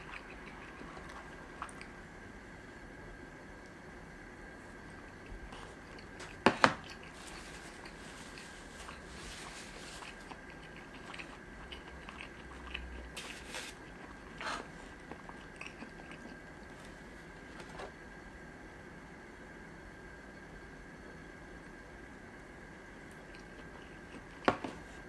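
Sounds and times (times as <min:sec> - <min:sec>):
person chewing and biting: 0:05.1 - 0:14.4, 0:15.0 - 0:16.6.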